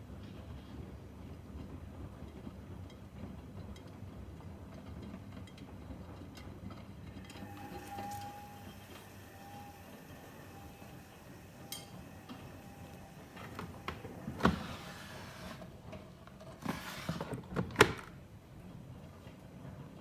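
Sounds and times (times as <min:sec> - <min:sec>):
washing machine water swishes: 0:07.2 - 0:15.8
washing machine knocks and thumps: 0:12.0 - 0:15.0.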